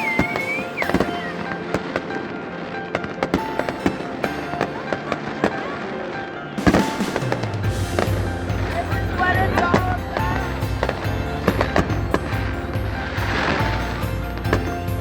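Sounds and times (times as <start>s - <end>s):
fireworks popping and crackling: 0.0s - 15.0s
loud firework bang: 6.6s - 15.0s.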